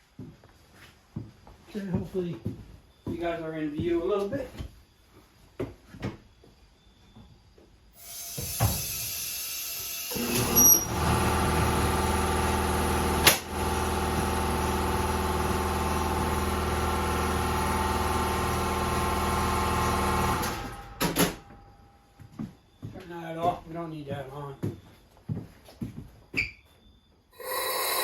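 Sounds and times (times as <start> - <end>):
small engine idling: 10.1 - 21.0.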